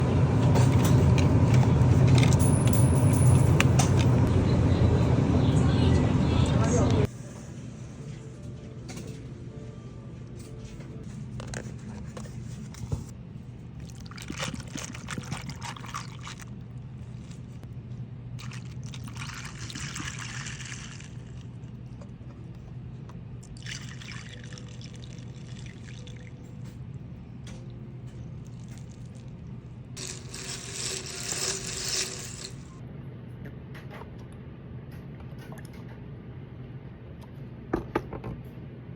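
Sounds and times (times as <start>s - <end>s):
steady low hum: 0.0s - 38.9s
liquid pouring into cup of ice: 13.8s - 17.6s, 18.4s - 21.7s, 23.4s - 26.4s, 30.0s - 32.7s.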